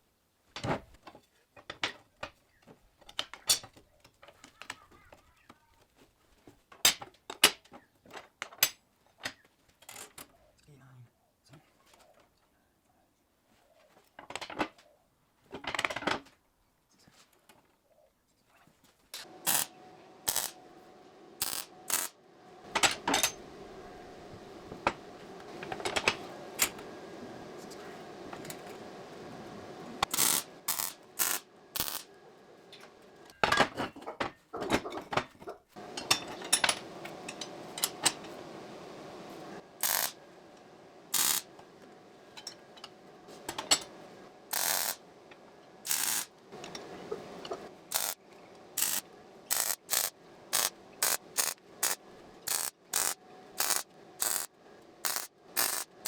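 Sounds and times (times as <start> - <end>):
faint steady hum: 19.2 - 34.0, 35.8 - 56.0.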